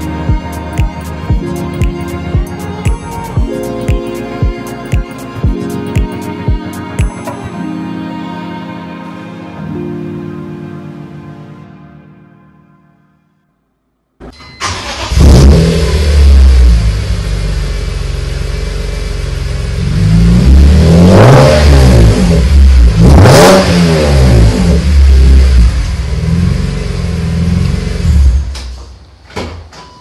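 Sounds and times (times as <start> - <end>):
car engine starting and revving: 14.6 - 28.7.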